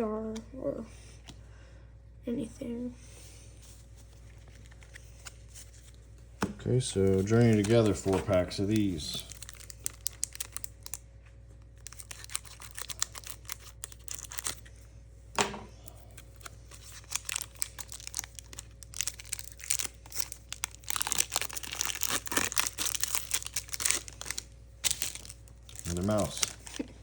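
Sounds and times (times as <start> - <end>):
foil wrapper crinkling and tearing: 7.0 - 14.7, 15.9 - 27.0.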